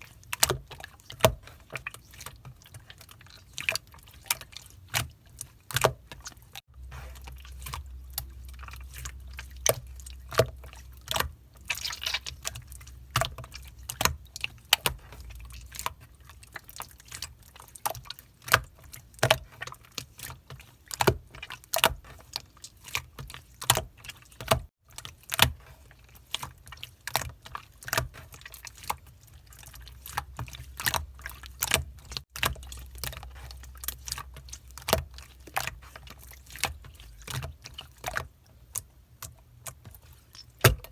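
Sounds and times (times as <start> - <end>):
slime squeezed clicking and popping: 11.1 - 12.6.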